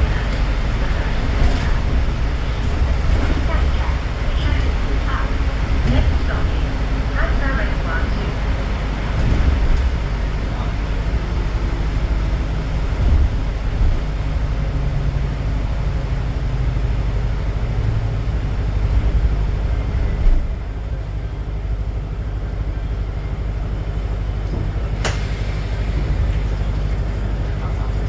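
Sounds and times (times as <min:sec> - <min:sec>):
bus engine and road rumble: 0:00.0 - 0:28.0.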